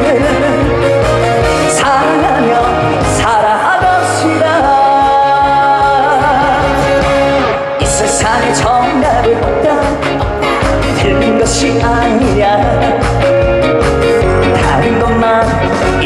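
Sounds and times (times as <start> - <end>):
band playing trot music: 0.0 - 16.0
melody line: 0.0 - 16.0.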